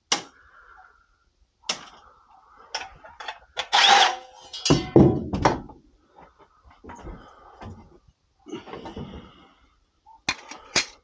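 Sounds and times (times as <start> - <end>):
clicks and knocks of tools: 10.2 - 11.0.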